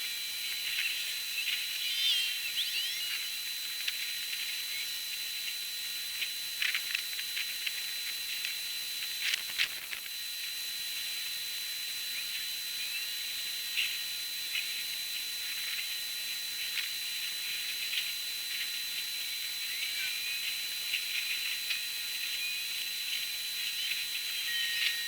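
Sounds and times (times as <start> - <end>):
thin constant whine: 0.0 - 25.0.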